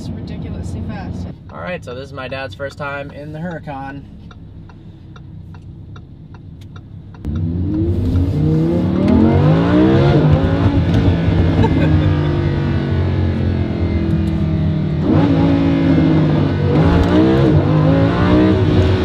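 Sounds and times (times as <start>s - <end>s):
engine ticking: 1.3s - 7.9s
sports car engine accelerating: 5.4s - 19.0s.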